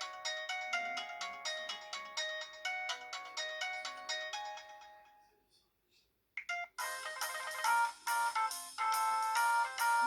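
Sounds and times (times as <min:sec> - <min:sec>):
phone ringtone melody: 0:06.5 - 0:10.0.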